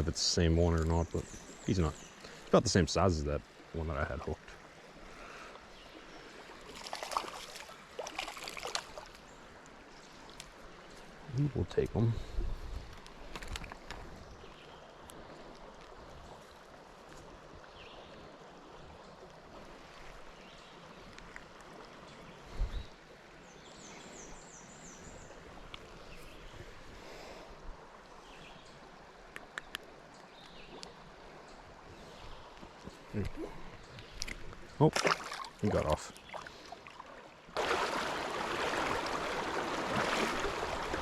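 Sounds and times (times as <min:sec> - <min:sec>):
river water rushing: 0:03.5 - 0:11.3, 0:34.9 - 0:41.0.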